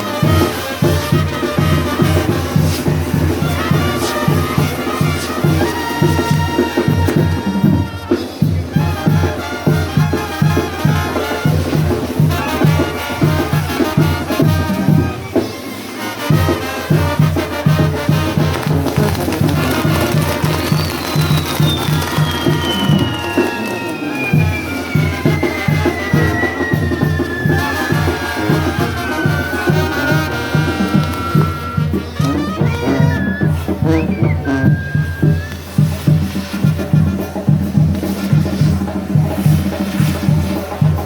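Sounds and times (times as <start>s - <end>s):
brass band music with trumpets: 0.0s - 41.0s
high whistle sliding down: 19.8s - 35.9s.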